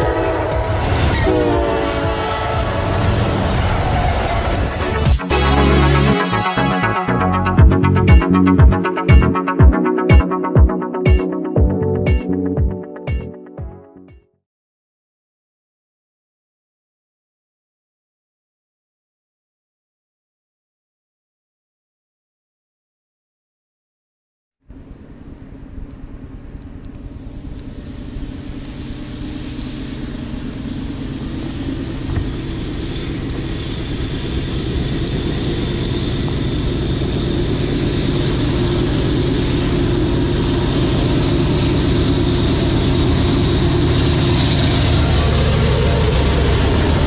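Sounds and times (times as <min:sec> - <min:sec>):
locomotive engine rumble: 0:00.0 - 0:09.3, 0:24.8 - 0:47.0.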